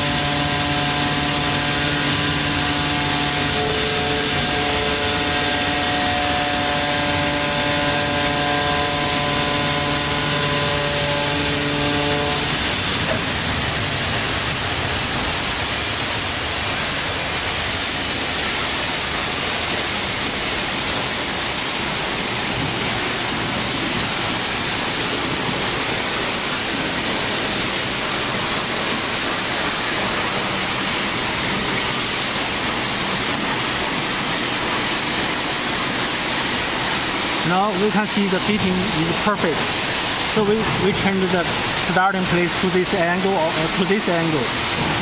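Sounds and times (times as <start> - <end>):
sheet cutter hissing: 0.0 - 13.9
machine whining tone: 0.0 - 14.5.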